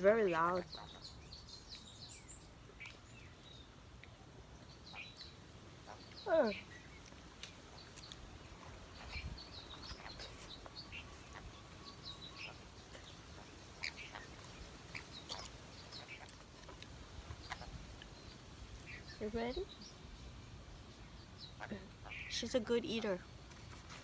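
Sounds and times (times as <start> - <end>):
parrot chirps and clicks: 13.8 - 16.9.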